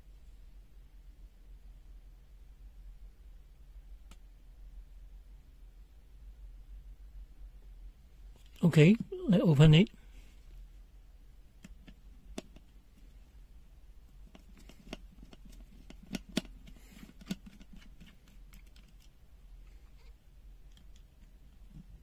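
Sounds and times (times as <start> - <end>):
plastic case clicks and taps: 11.6 - 12.6.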